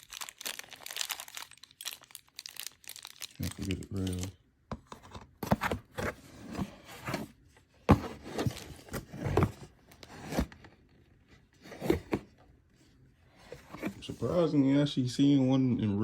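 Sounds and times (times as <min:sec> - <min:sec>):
packaging rustling and scraping: 0:04.9 - 0:12.4.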